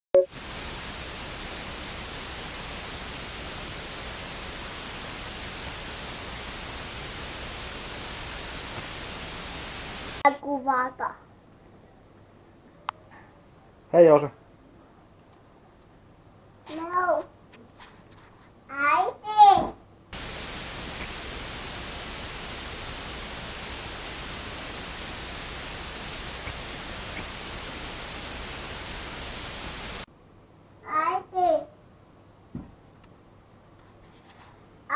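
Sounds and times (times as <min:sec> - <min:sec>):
static hiss: 0:00.2 - 0:10.3, 0:20.1 - 0:30.1.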